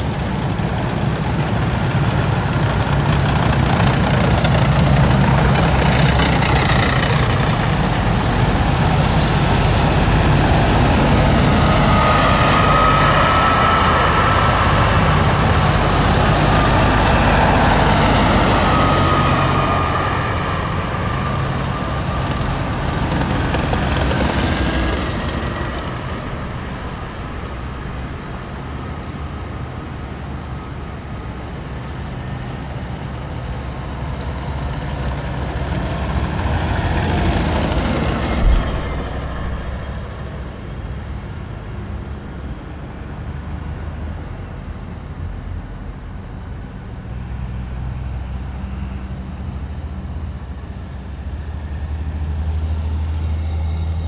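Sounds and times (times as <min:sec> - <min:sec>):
heavy military vehicles driving past: 0:00.0 - 0:54.0
short thump: 0:38.3 - 0:40.5.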